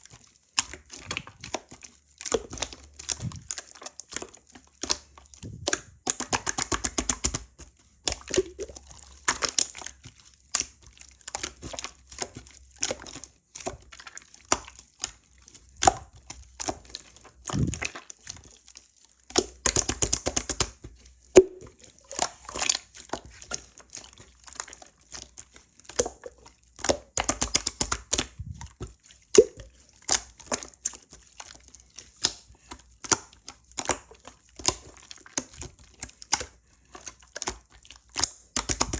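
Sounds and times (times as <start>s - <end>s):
slime squished by hand popping: 21.4s - 22.3s.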